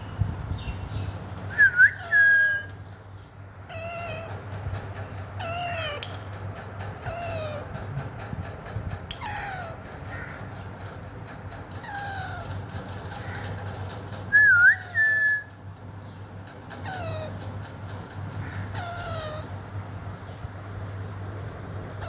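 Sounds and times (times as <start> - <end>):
parakeet calling: 3.6 - 4.4, 5.4 - 6.1, 7.0 - 7.8, 9.1 - 10.6, 11.7 - 13.5, 16.7 - 19.6.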